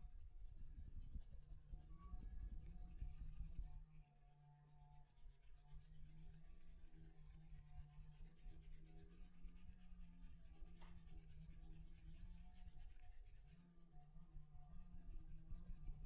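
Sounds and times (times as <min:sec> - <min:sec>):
hands rubbing skin and hair: 0:06.2 - 0:16.0.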